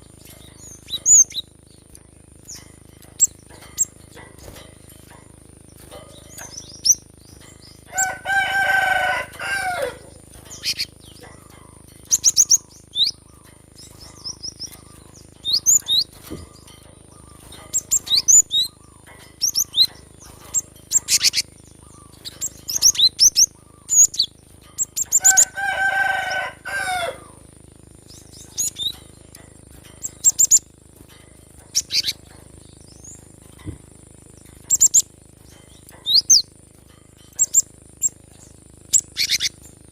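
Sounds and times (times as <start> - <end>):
bird chirping and trilling: 0.0 - 39.9
rooster crowing: 7.9 - 10.8, 25.1 - 27.5.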